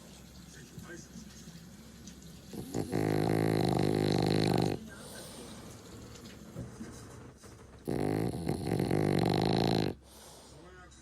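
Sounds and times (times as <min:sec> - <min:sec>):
dog snoring: 0:02.5 - 0:05.6, 0:07.8 - 0:10.5
dog snuffling breaths: 0:02.5 - 0:05.9, 0:07.8 - 0:10.7.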